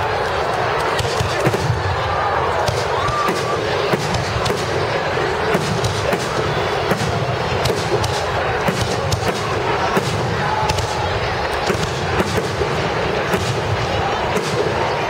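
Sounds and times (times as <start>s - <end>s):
fireworks bangs: 0.7s - 15.0s.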